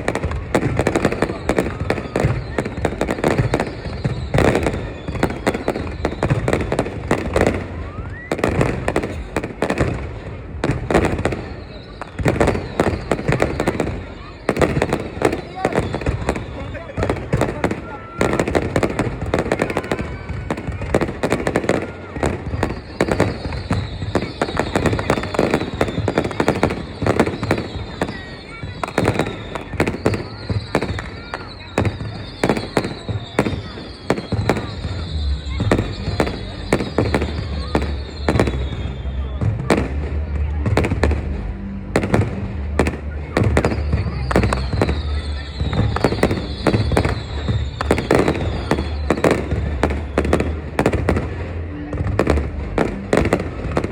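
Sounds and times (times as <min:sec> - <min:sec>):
fireworks bangs and crackling: 0:00.0 - 0:53.9
faint descending whistle: 0:01.2 - 0:06.5, 0:11.3 - 0:16.9, 0:21.8 - 0:39.4, 0:43.6 - 0:50.5.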